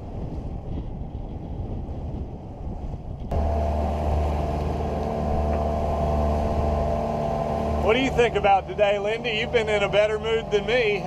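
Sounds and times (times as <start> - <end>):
wind: 0.0 - 11.0
boat engine droning: 3.3 - 11.0
sea noise: 3.3 - 11.0.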